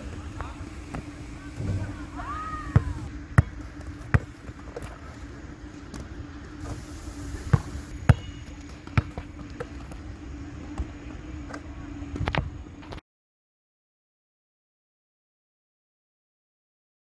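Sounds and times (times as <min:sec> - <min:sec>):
low hum: 0:00.0 - 0:13.0
basketball bouncing: 0:02.7 - 0:04.4, 0:07.5 - 0:10.0.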